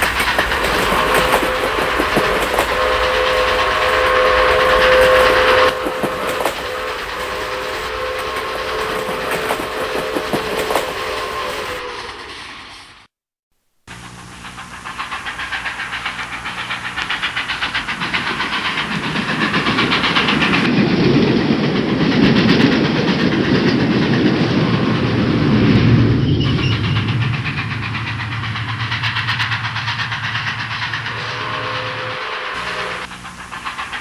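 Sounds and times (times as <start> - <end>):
train clacking on rails: 0.0 - 12.2, 13.9 - 34.0
low rumble: 24.3 - 33.1.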